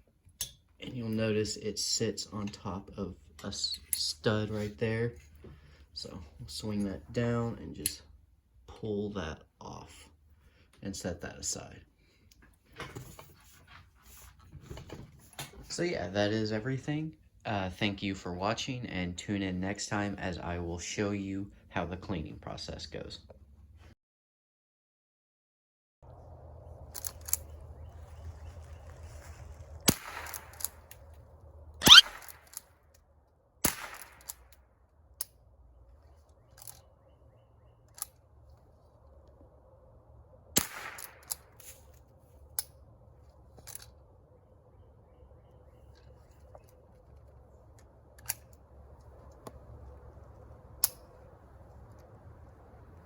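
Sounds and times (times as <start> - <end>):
rifle shots: 29.9 - 30.9, 31.8 - 32.6, 33.6 - 34.5, 40.6 - 41.6
faint clicks and cracks: 45.9 - 53.0.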